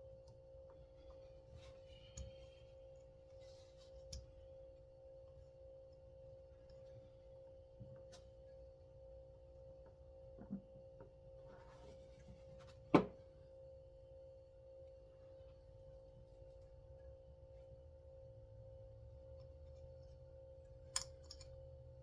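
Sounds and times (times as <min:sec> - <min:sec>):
steady humming tone: 0:00.0 - 0:22.0.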